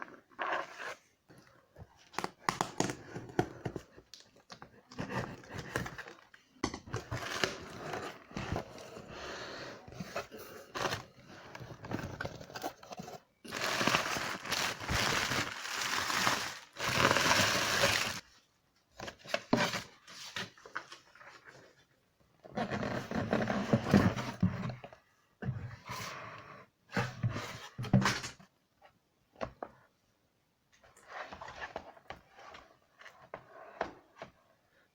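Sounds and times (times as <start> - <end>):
packaging crinkling and rustling: 7.0 - 8.8, 10.8 - 18.2.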